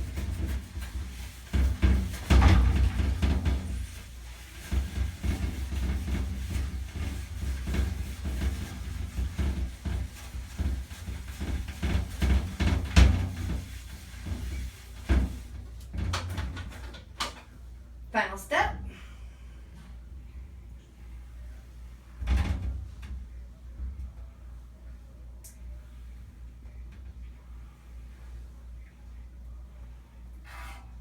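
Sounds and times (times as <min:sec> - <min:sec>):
irregular knocks and bumps: 0:00.0 - 0:17.4.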